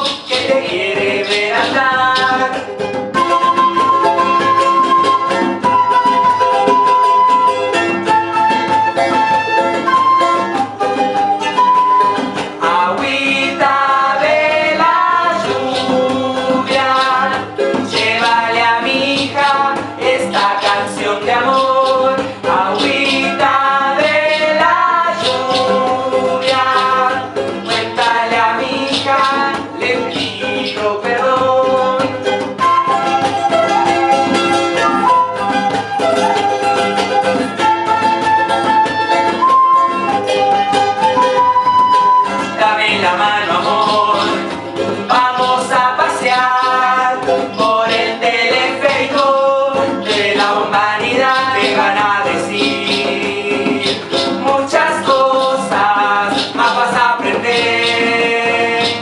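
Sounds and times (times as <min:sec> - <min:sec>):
rattle shaking: 0:00.0 - 0:03.0
live band playing folk music: 0:00.0 - 0:59.0
melodic lead line: 0:32.4 - 0:42.7.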